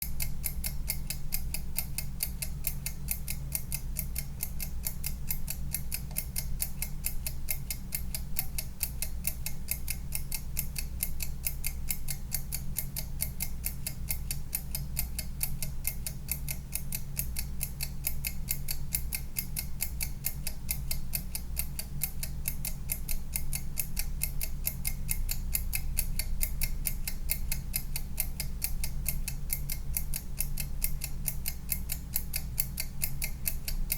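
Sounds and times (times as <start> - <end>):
kitchen timer ticking: 0.0 - 33.9.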